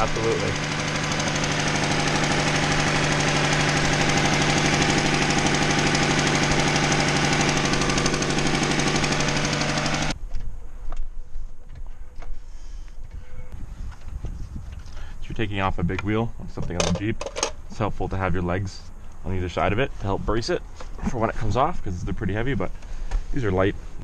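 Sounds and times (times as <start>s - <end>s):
car engine running: 0.0s - 10.2s
rapid exhaust ticking: 0.0s - 10.2s.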